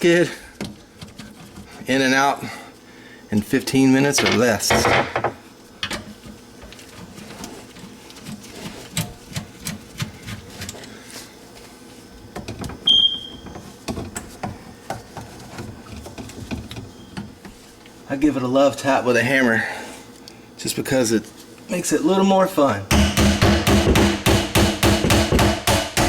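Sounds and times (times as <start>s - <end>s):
smoke detector chirp: 12.8s - 13.5s.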